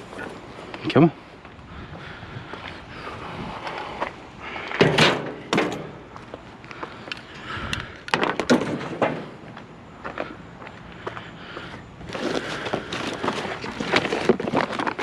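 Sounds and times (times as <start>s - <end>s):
junk clattering and rattling: 4.7s - 6.2s, 8.1s - 9.7s, 12.5s - 15.0s.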